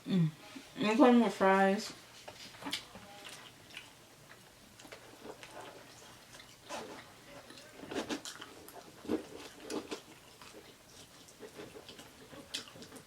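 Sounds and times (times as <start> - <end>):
person chewing food: 2.3 - 13.0.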